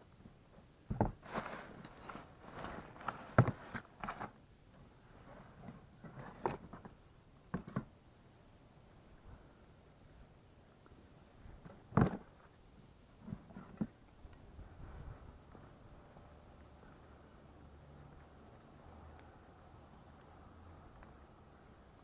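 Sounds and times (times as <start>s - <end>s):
handling knocks and rustles: 0.2s - 4.4s, 5.5s - 8.0s, 11.5s - 12.5s.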